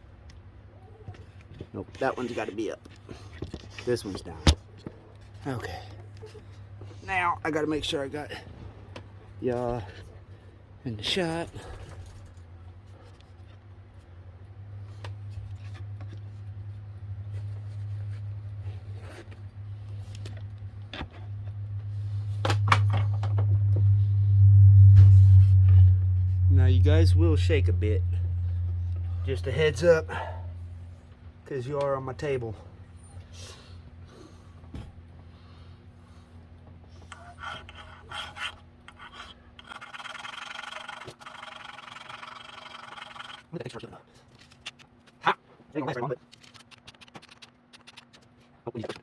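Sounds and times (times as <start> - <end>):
steady low hum: 0.0 - 49.0
hand file rasping: 37.1 - 43.4
quick run of clicks: 46.3 - 48.3.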